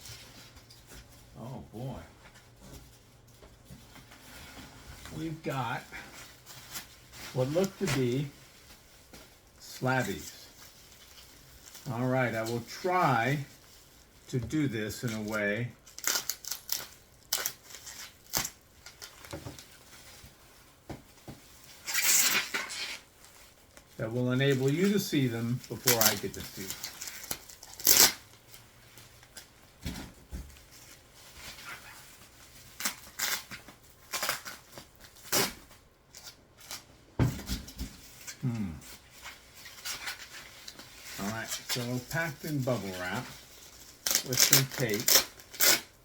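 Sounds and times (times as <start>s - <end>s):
bubble wrap crinkling: 0.0s - 37.0s, 37.6s - 46.0s
bubble wrap clicks: 44.0s - 45.9s.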